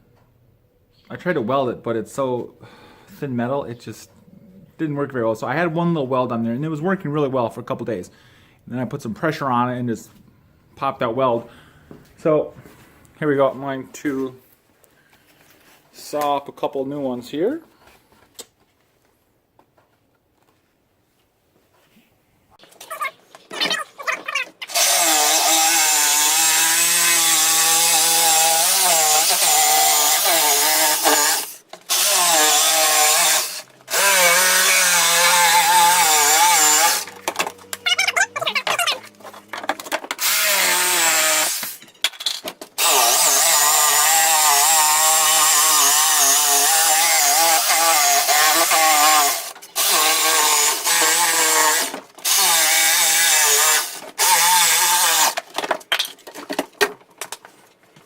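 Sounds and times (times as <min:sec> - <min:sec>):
power saw cutting wood: 0:24.6 - 0:41.8, 0:42.8 - 0:55.7.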